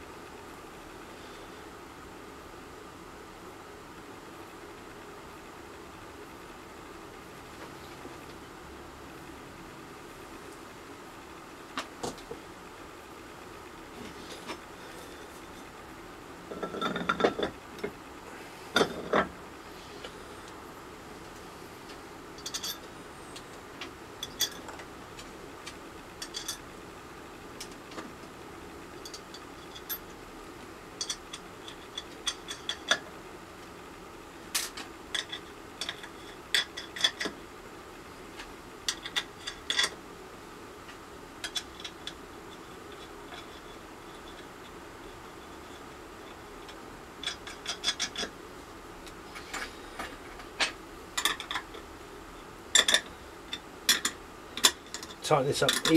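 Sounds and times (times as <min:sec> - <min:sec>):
parts clattering: 0:16.5 - 0:18.0, 0:18.7 - 0:19.4, 0:49.3 - 0:51.8, 0:52.7 - 0:55.9.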